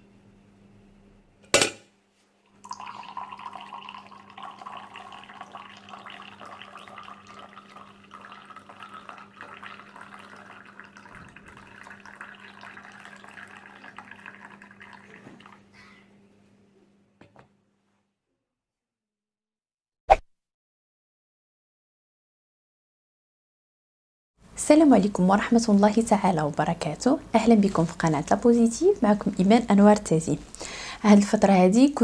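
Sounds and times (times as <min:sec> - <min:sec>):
liquid pouring: 0:02.6 - 0:15.7.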